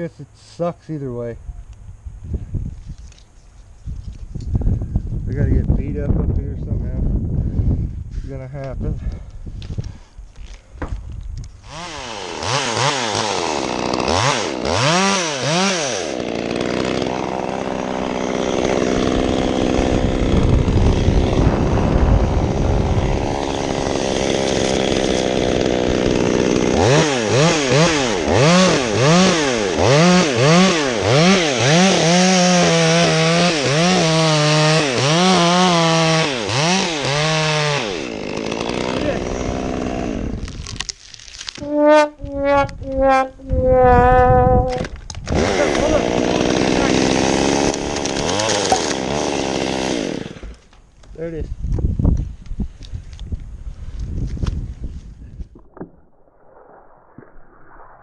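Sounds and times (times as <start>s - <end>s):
chainsaw cutting wood: 11.6s - 43.2s, 44.7s - 50.8s.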